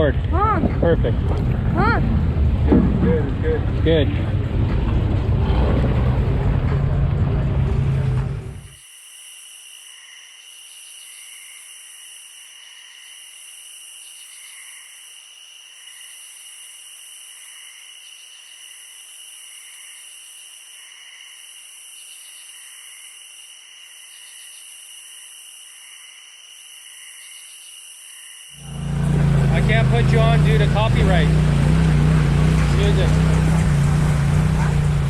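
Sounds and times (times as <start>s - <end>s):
insects trilling: 8.6s - 29.1s
soft insect chirps: 8.7s - 28.8s
insect buzzing: 8.7s - 29.0s.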